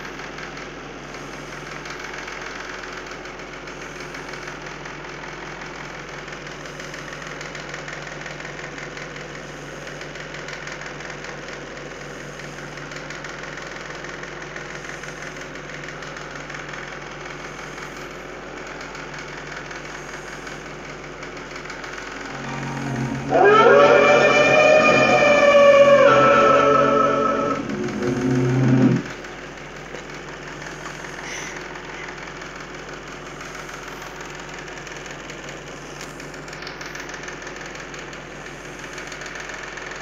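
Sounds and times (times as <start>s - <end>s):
small motor humming with rattle: 0.0s - 22.2s, 27.6s - 40.0s.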